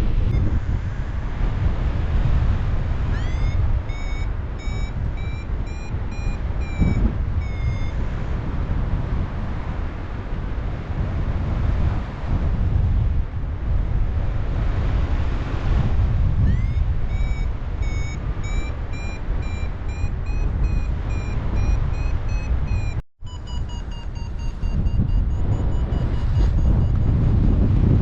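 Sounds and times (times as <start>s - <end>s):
wind noise on microphone: 0.0s - 28.0s
variometer beeping: 0.3s - 0.6s, 3.1s - 8.1s, 16.4s - 27.5s.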